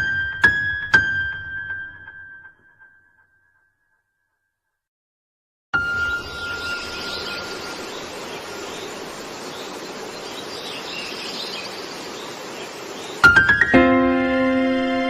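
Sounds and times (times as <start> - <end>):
steady background hiss: 6.0 - 13.7.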